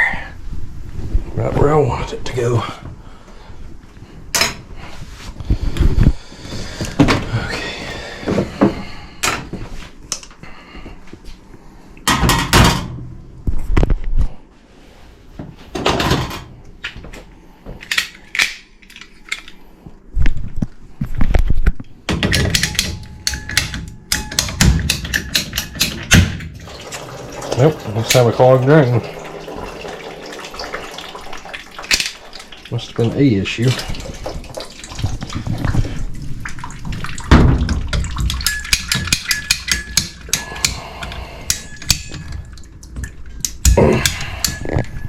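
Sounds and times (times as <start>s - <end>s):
tools and metal parts clattering: 22.1s - 26.6s, 38.2s - 40.8s.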